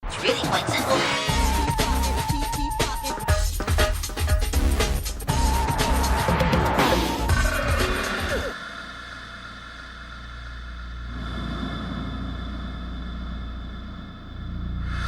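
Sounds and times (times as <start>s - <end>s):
music: 0.0s - 8.6s
low rumble with faint hum: 8.2s - 15.0s.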